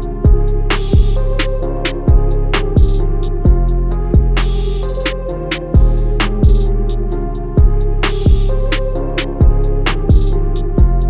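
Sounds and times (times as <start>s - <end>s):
electronic music with kick drum: 0.0s - 11.0s.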